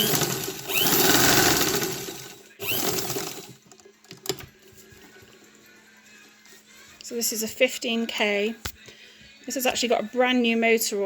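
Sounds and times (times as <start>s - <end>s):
sewing machine stitching fast: 0.0s - 3.6s.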